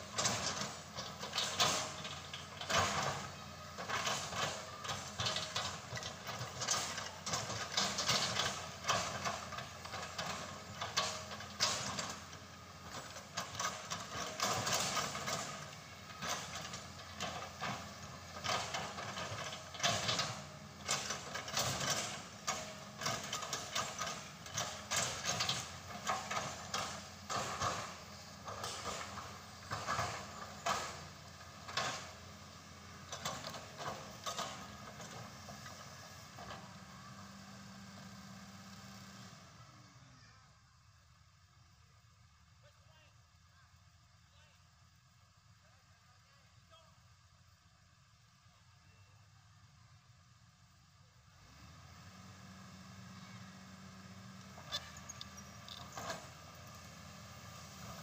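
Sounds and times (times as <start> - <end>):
mechanical clanking and knocking: 16.2 - 32.2.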